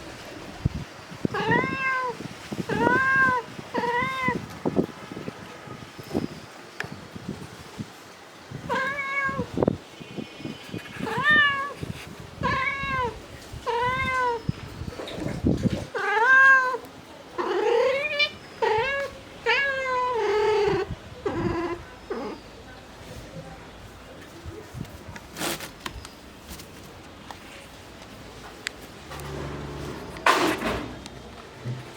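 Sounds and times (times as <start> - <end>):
cat meowing: 1.4 - 4.4, 8.7 - 9.5, 11.0 - 11.8, 12.4 - 14.5, 16.0 - 16.8, 17.4 - 22.4.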